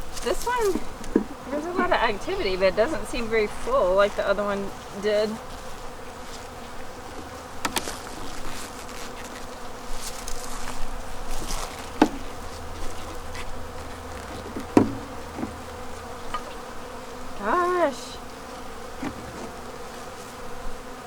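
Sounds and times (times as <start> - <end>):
bees buzzing: 0.0 - 21.0
sharp knocks: 11.9 - 12.3, 14.2 - 15.7.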